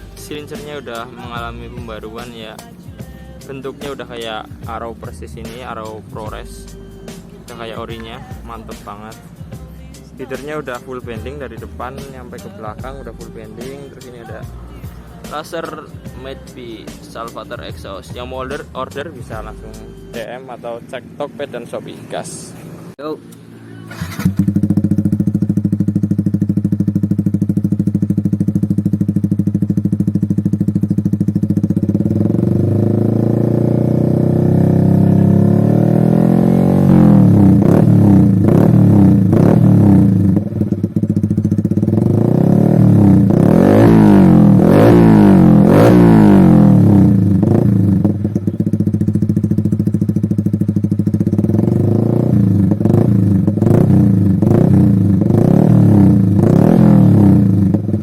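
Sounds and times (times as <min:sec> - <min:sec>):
motorcycle engine revving: 0:00.0 - 0:58.0.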